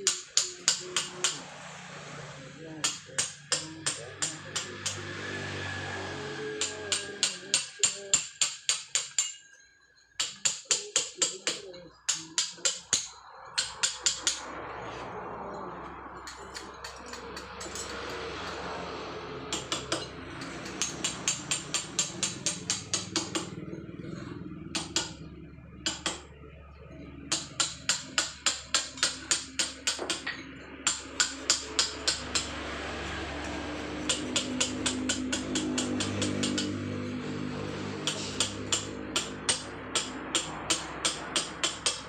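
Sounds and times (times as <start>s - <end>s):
hammer tapping chisel into stone: 10.2s - 14.4s, 19.5s - 23.6s, 24.7s - 25.2s, 25.8s - 26.2s, 27.3s - 32.5s, 34.0s - 36.8s, 38.0s - 42.0s.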